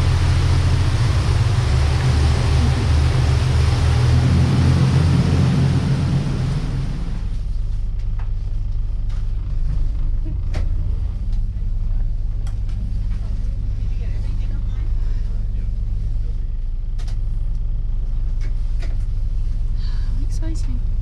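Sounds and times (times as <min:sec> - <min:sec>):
rushing water and air: 0:00.0 - 0:07.5
boat engine humming: 0:00.0 - 0:16.5.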